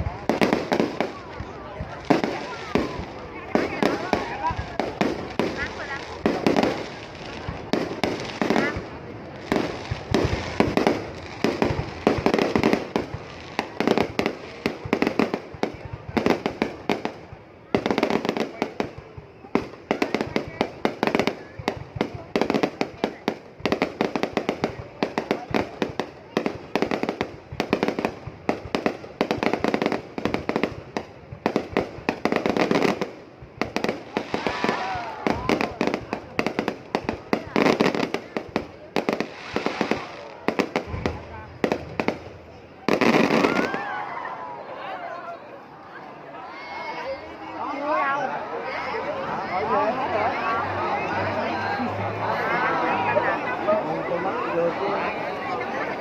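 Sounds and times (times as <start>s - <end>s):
fireworks bangs and crackles: 0.0s - 56.0s.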